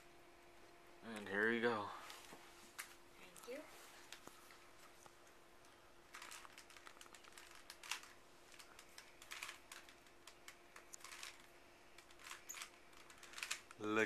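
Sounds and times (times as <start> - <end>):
puzzle cube plastic clicks: 6.1 - 13.8.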